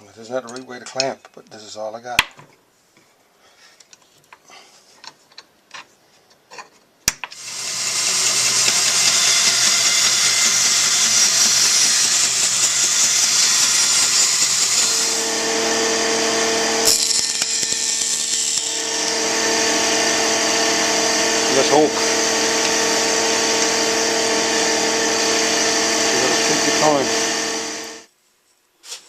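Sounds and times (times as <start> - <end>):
power tool running: 7.3 - 28.1
steady hum: 14.3 - 28.1.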